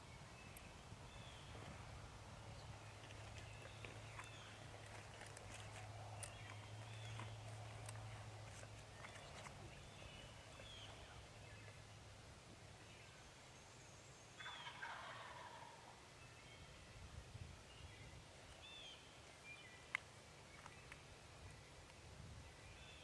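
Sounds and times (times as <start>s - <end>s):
wild turkey gobbling: 14.4s - 15.9s.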